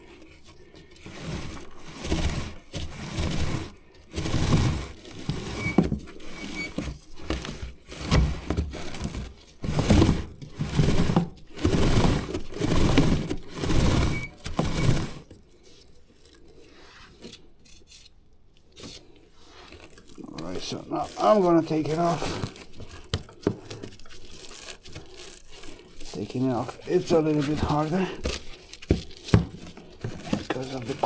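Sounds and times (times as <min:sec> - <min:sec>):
brush scrubbing drive chain: 0:20.2 - 0:29.0, 0:29.8 - 0:31.0.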